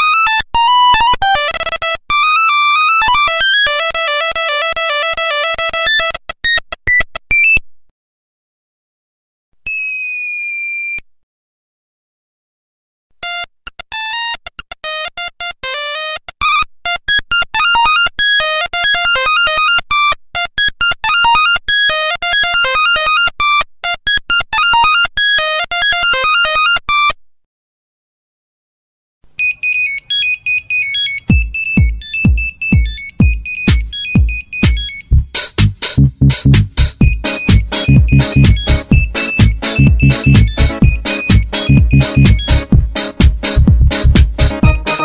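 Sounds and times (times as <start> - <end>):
monophonic phone ringtone beeping: 16.4 - 27.1, 29.4 - 35.2, 37.0 - 42.7, 44.6 - 45.0
regular low thump: 31.3 - 44.9.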